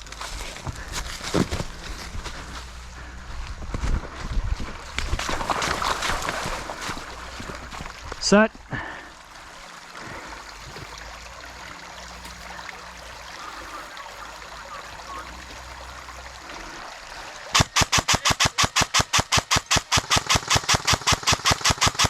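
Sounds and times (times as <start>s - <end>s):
low outdoor background: 0.0s - 22.0s
airsoft gun rapid fire: 17.5s - 22.0s.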